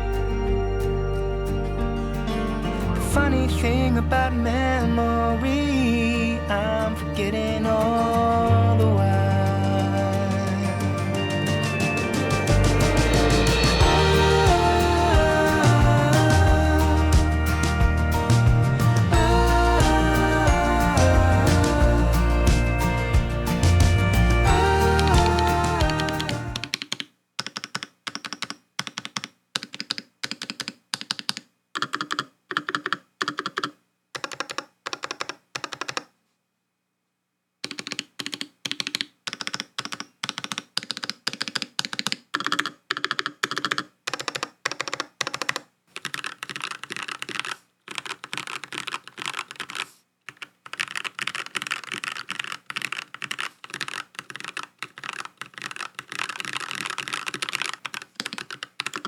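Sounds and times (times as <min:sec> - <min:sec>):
mechanical keyboard typing: 0:25.0 - 0:36.1, 0:37.6 - 0:59.0.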